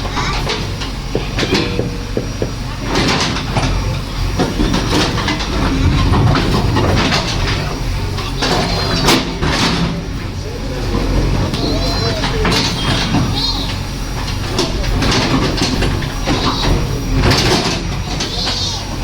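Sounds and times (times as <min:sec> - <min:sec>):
diesel engine running: 0:00.0 - 0:19.0
metallic clanks from bucket: 0:00.5 - 0:07.6.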